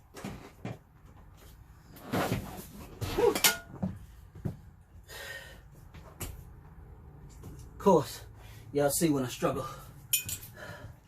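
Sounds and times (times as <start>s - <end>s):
hand tools clinking on bolts: 10.1s - 10.6s.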